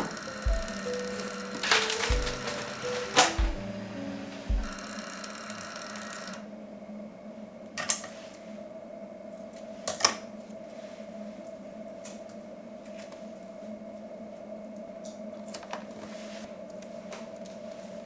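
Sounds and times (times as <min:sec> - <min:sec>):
steady low hum: 0:03.4 - 0:05.2.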